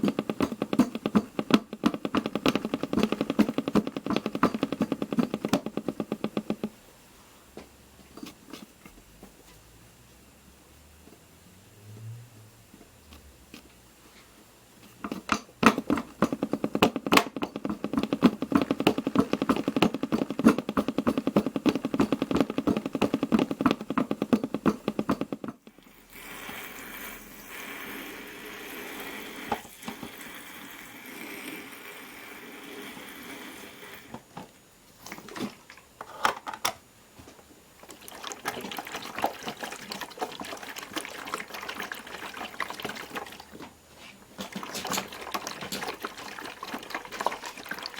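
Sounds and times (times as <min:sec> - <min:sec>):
washing machine clattering: 0:00.0 - 0:06.7, 0:15.0 - 0:25.6, 0:37.8 - 0:47.9
water rushing into machine: 0:37.8 - 0:43.7, 0:44.4 - 0:47.9
water trickling and splashing: 0:37.9 - 0:43.6, 0:44.4 - 0:47.9.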